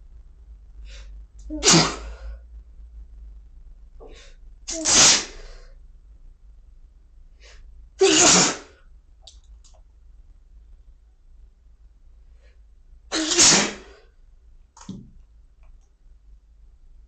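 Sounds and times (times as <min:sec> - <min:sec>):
person sneezing: 0:01.5 - 0:02.2, 0:04.7 - 0:05.5, 0:08.0 - 0:08.8, 0:13.1 - 0:14.0.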